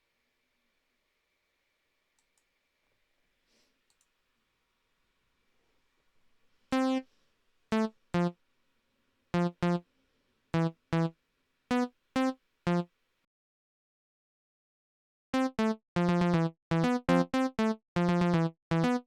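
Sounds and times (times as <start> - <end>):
buzzy synthesizer notes: 6.8 - 7.0, 7.7 - 8.3, 9.4 - 9.8, 10.6 - 11.1, 11.7 - 12.9, 15.4 - 19.0.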